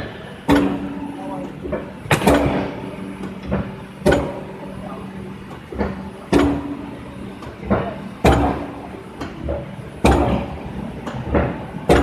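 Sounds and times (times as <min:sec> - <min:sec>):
steady machine hum: 0:00.0 - 0:12.0
sharp metallic clunks: 0:07.7 - 0:10.5.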